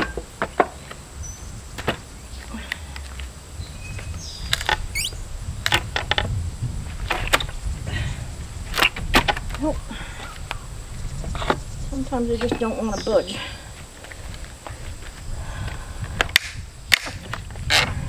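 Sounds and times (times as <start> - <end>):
short rising squeak: 4.9 - 5.2.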